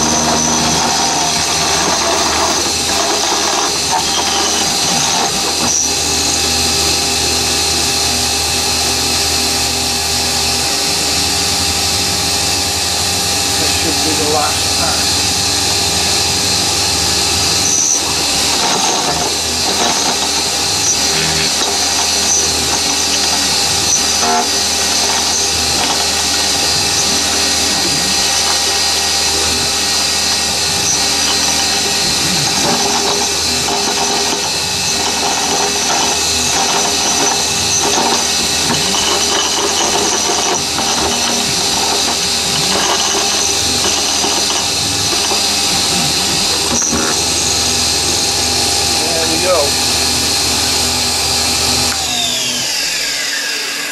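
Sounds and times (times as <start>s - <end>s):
cutter cutting noises: 0.0s - 7.1s, 17.4s - 51.0s
milling machine whining: 0.0s - 53.9s.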